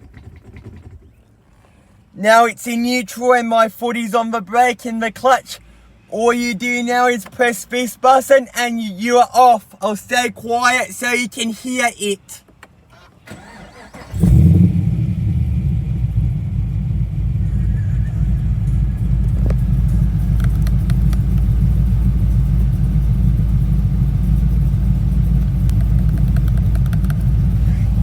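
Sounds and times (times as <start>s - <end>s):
v-eight engine idling: 13.3s - 28.0s
starter cranking: 18.6s - 21.8s, 25.4s - 28.0s.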